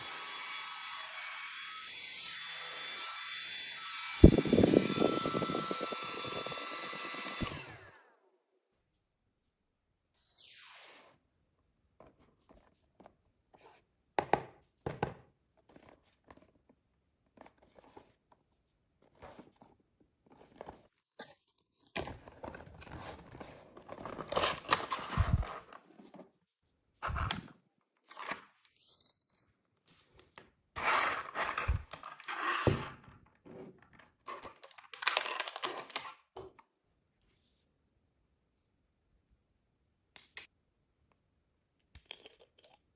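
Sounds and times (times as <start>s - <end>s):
packaging tearing and crinkling: 23.9s - 25.7s, 30.8s - 32.7s, 34.3s - 36.3s.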